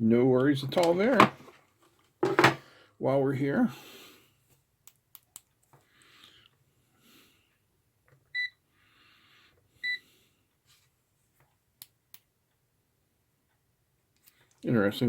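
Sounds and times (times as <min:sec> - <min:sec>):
soft breathing: 0:05.8 - 0:07.7, 0:08.7 - 0:11.0.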